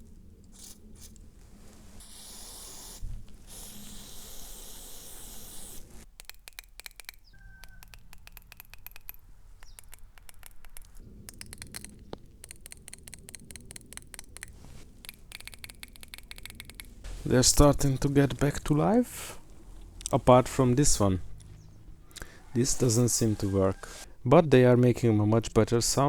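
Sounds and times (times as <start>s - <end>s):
spray hiss: 1.8s - 6.1s, 17.0s - 19.5s
solenoids clicking: 6.0s - 24.1s.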